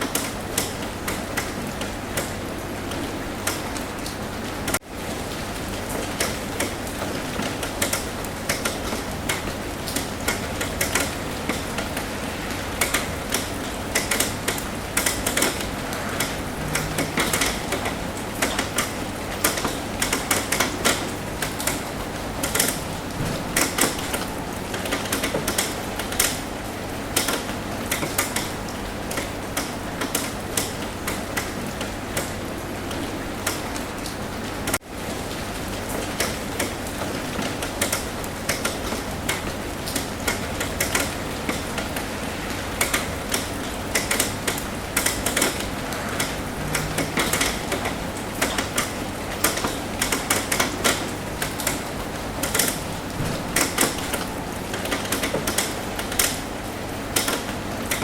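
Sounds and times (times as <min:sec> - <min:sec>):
raindrops tapping on roof: 0:00.0 - 0:58.0
steady hiss of rain: 0:00.0 - 0:58.0.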